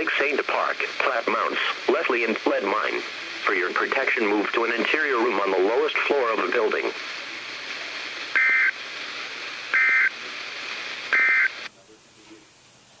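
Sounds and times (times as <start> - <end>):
radio hiss: 0.0 - 13.0
two-tone data screech: 8.4 - 8.8, 9.7 - 10.2, 11.1 - 11.7.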